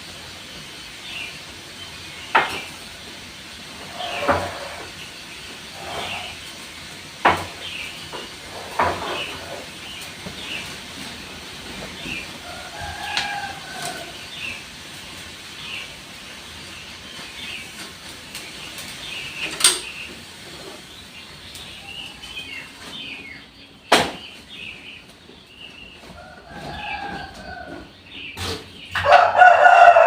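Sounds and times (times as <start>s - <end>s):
small birds chirping: 0.2s - 29.2s
rooster crowing: 12.4s - 14.3s, 26.2s - 27.9s, 29.0s - 30.0s.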